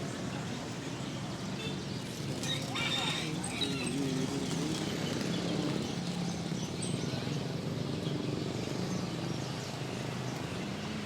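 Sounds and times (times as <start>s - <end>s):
caged birds chirping: 0.0s - 11.0s.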